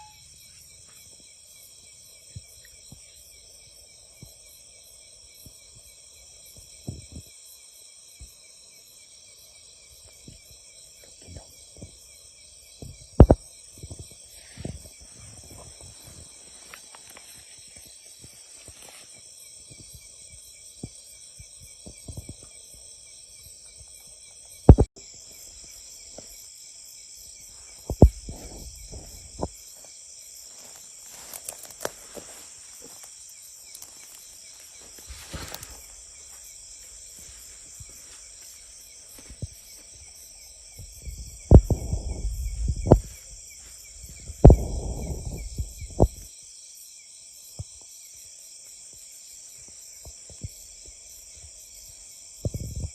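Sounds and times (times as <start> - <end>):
high chorus of insects: 0.0 - 52.9
sharp thumps: 24.7 - 24.9, 40.8 - 43.4, 44.0 - 46.2.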